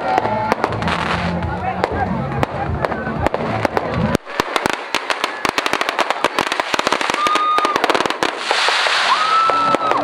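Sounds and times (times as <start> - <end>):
fireworks crackling pops: 0.0 - 10.0
firework whistles: 4.4 - 10.0
hissing rush: 4.4 - 10.0.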